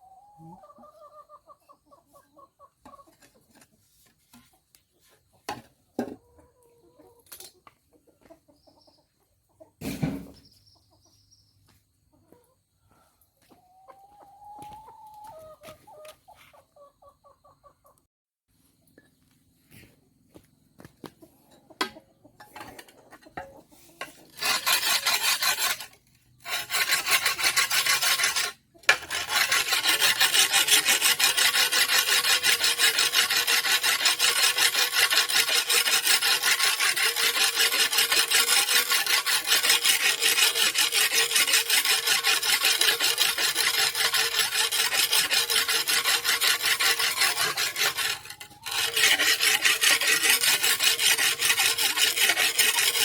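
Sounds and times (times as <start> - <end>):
blade scraping on sharpener: 24.0 - 53.0.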